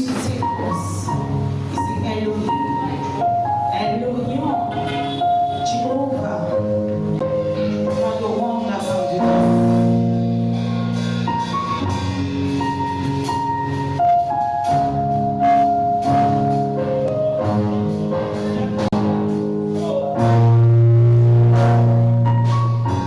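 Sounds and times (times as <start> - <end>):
held keyboard chords: 0.0 - 23.0
low bass chord: 9.1 - 23.0.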